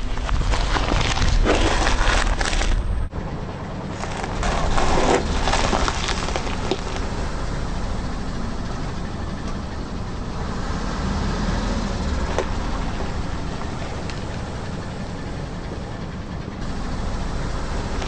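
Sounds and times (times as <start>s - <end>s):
tyre crushing crunchy objects: 0.0s - 3.1s, 3.9s - 7.4s, 12.2s - 14.4s
car engine running: 0.0s - 18.0s.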